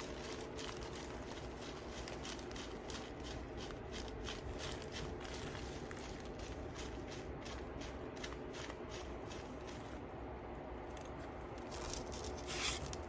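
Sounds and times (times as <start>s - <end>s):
beads clicking and rustling: 0.0s - 10.0s, 10.9s - 13.0s.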